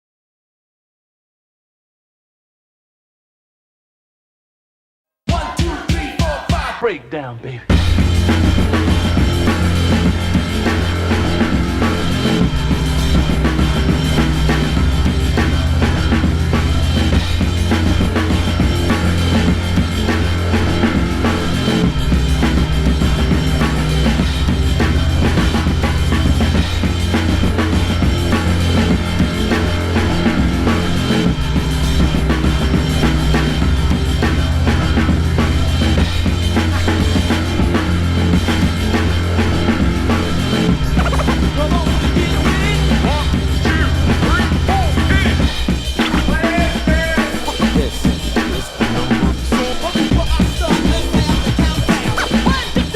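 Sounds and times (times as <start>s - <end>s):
drum kit beat: 5.3s - 52.9s
held bass line: 7.7s - 52.9s
rock backing music: 7.7s - 52.9s.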